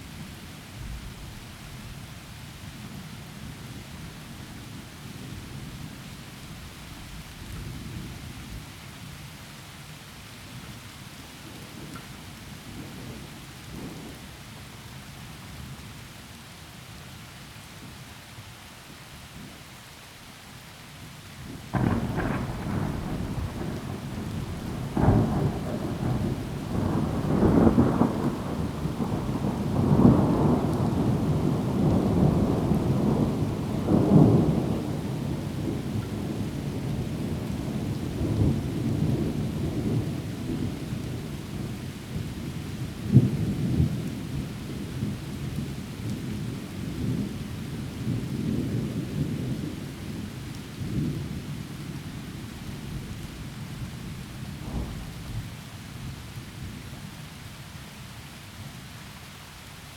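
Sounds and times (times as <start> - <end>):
steady rain falling: 0.0 - 59.9
thunder rolling: 21.7 - 37.0, 54.6 - 55.5.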